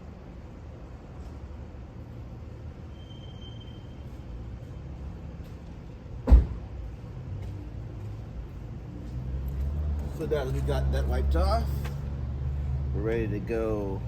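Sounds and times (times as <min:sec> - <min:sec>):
sharp thump: 0:06.2 - 0:06.6.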